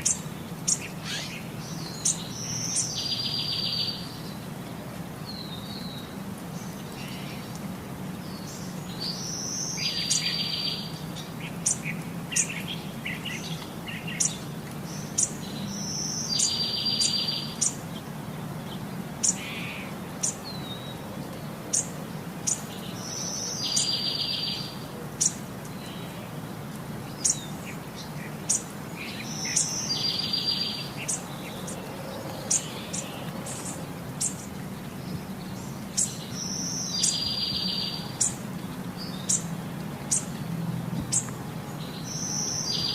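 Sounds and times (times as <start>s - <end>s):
bird song with buzzy trill: 0.0s - 4.4s, 8.4s - 17.8s, 21.7s - 26.1s, 27.1s - 40.5s, 41.1s - 42.9s.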